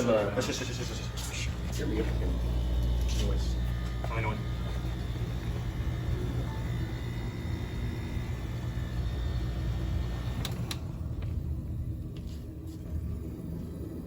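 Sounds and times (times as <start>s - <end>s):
window air conditioner running: 0.0s - 14.0s
air conditioner switch clicks: 10.2s - 10.9s.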